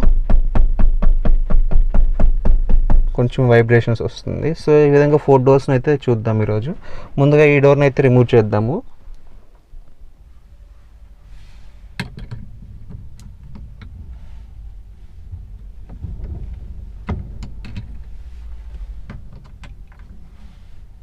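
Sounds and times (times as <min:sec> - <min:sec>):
low rumble: 0:09.7 - 0:21.0.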